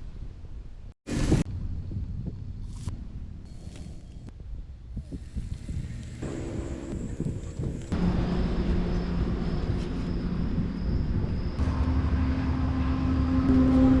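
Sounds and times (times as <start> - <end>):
engine rumbling and revving: 6.0 - 14.0.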